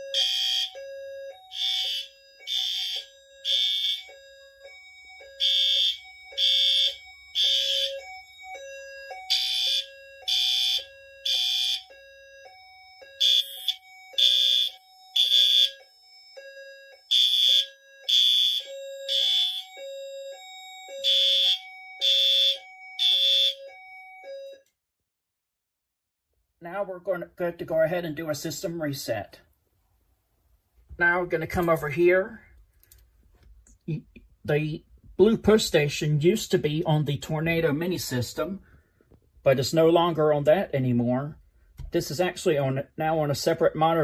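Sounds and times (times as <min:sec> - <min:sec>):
fire alarm horn blasts: 0:00.0 - 0:24.7.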